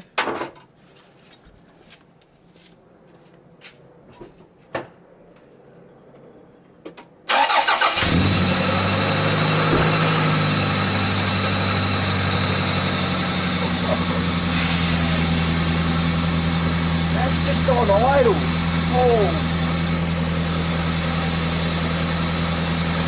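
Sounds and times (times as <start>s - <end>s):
car engine starting and idling: 7.3s - 23.0s.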